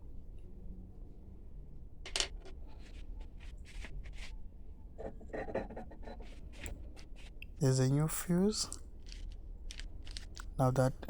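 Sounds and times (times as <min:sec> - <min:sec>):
low steady hum: 0:00.0 - 0:11.0
small parts scratching and rubbing: 0:02.1 - 0:04.4, 0:05.0 - 0:11.0.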